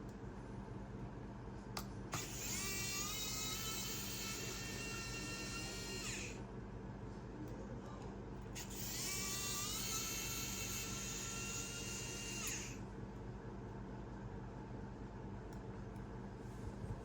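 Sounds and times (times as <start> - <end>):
electric screwdriver whining: 2.2 - 6.4, 8.6 - 12.8.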